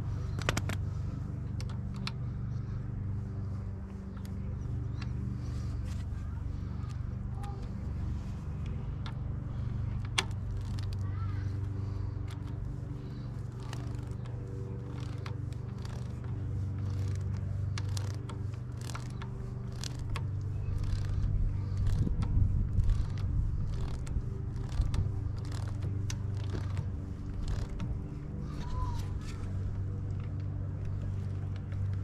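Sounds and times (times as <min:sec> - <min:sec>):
low hum: 0:00.0 - 0:32.0
wrench clicking and ratcheting: 0:10.0 - 0:11.0, 0:14.9 - 0:16.2, 0:16.8 - 0:22.2, 0:22.8 - 0:26.8, 0:27.4 - 0:27.8.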